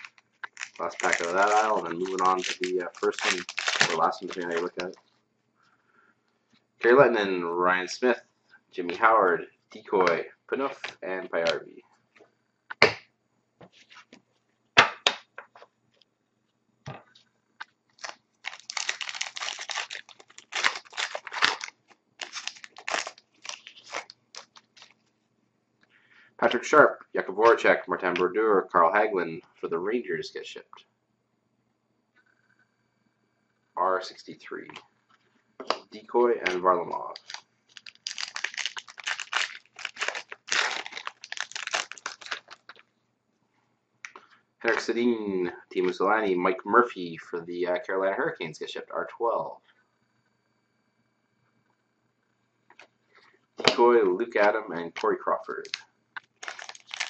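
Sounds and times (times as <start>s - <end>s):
wrapper crinkling and tearing: 0.0s - 5.0s, 17.9s - 25.0s, 36.5s - 42.8s, 54.9s - 57.0s
wrapper sharp snaps: 0.0s - 5.0s, 18.0s - 25.0s, 36.5s - 42.8s, 55.0s - 57.0s.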